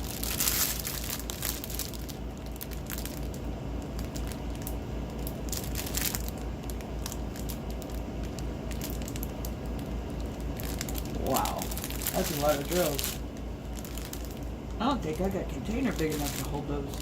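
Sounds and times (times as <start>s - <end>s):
plastic packets crinkling: 0.0s - 17.0s.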